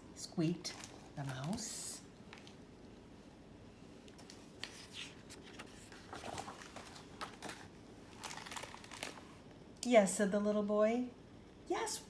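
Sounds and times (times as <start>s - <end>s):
faint paper rustling: 0.5s - 9.4s
book pages turning: 4.0s - 9.4s.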